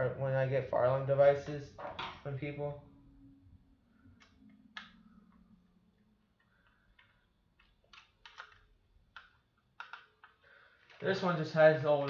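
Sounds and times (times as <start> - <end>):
faint clicks and light taps: 6.2 - 11.1.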